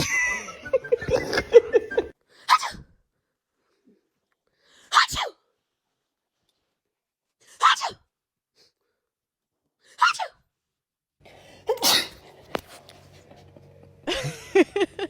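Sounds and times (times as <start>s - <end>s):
person fake-sneezing: 2.4s - 3.0s, 4.9s - 5.4s, 7.5s - 8.1s, 9.9s - 10.4s, 11.7s - 12.2s.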